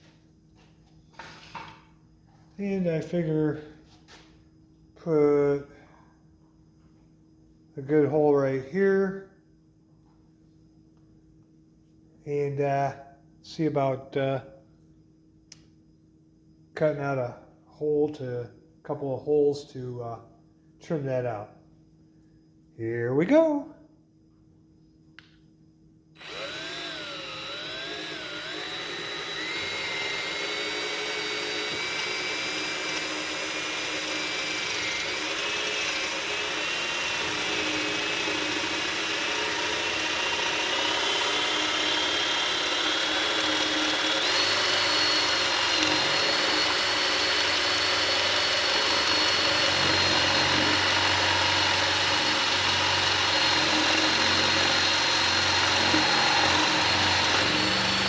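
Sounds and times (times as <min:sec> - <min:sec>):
electric drill boring into wood: 0:26.2 - 0:58.0.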